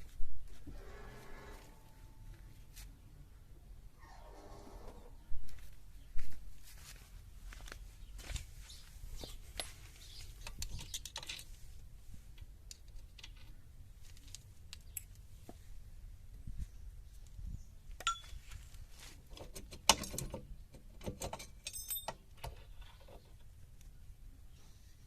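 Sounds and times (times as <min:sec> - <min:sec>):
clicks and metal knocks: 0:19.3 - 0:23.5.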